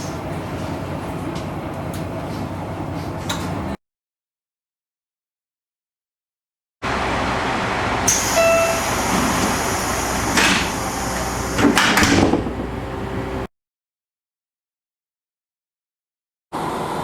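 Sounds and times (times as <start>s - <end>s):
warning beep: 8.3s - 8.9s
steady rumble: 8.9s - 13.5s.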